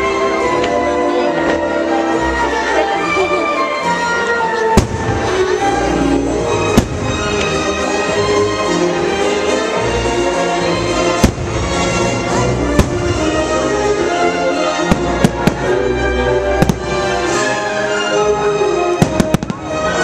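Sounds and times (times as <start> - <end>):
orchestral music: 0.0 - 20.0
fireworks bangs: 4.8 - 7.8, 11.0 - 14.1, 14.7 - 15.9, 16.5 - 17.6, 19.0 - 20.0.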